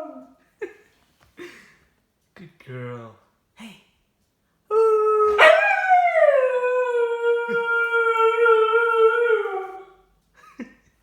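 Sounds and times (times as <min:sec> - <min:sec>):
dog howling: 0:04.7 - 0:10.0.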